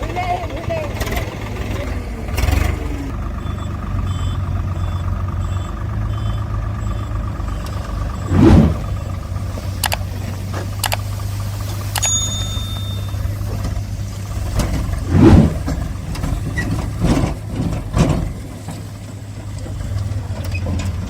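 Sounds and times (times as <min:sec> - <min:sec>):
heavy vehicle engine running: 0:00.0 - 0:21.0
reversing alarm beeping: 0:03.4 - 0:08.4, 0:11.9 - 0:13.5.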